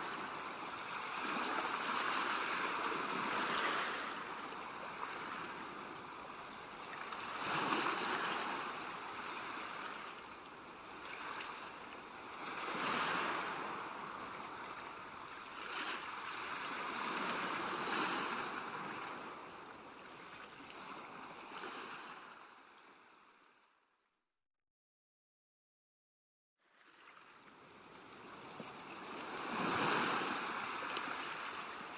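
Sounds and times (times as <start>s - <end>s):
ocean waves breaking: 0.0s - 5.9s, 27.9s - 31.9s.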